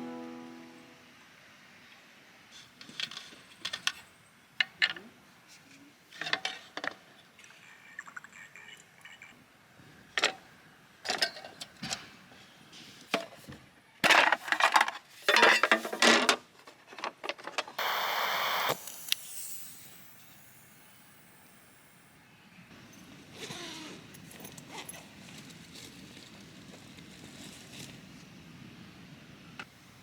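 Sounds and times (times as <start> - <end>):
steady hiss: 17.8 - 22.2.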